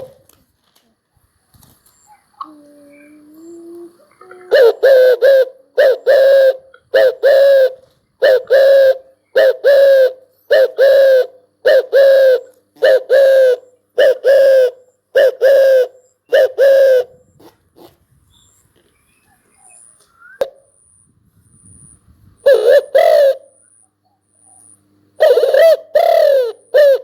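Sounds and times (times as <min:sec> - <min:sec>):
dove cooing: 0:00.0 - 0:00.2, 0:02.1 - 0:18.0, 0:22.4 - 0:23.7, 0:25.2 - 0:27.0.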